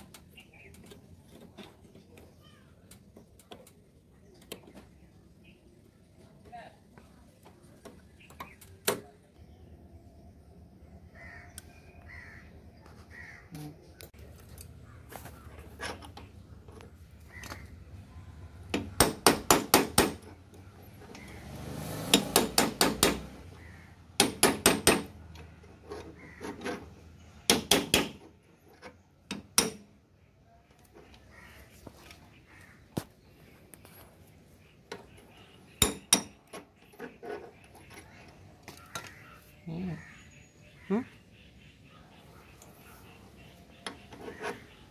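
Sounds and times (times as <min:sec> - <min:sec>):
hammer striking metal: 0:35.8 - 0:36.4.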